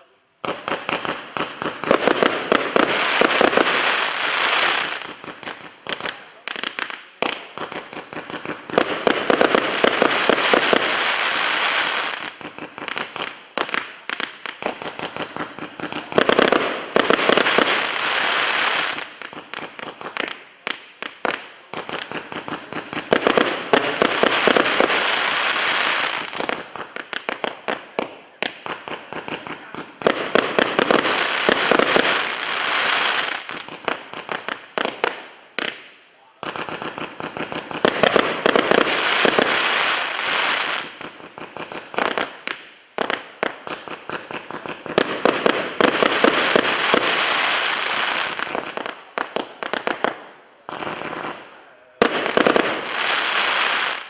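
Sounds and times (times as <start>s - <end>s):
firework pops: 0.0s - 3.8s
firework crackling: 0.0s - 54.0s.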